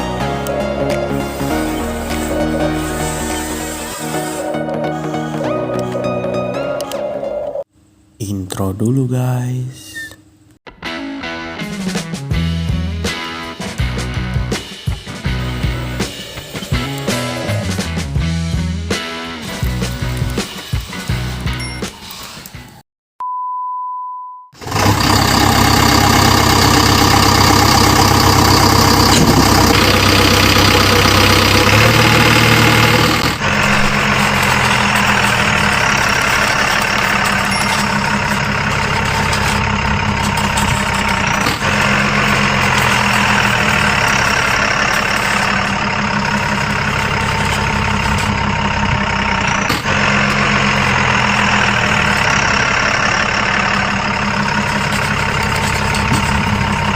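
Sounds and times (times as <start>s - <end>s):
simulated diesel engine idling: 0.0s - 5.1s, 24.6s - 56.9s
electronic beep: 21.6s - 21.9s, 37.5s - 37.9s.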